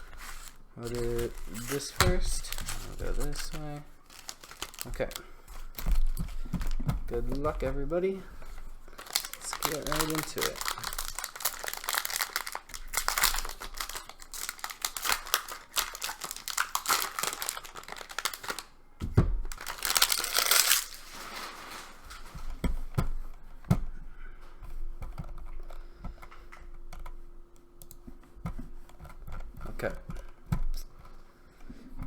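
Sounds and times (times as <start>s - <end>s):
wrappers crinkling and tearing: 0.0s - 18.8s, 19.4s - 22.6s.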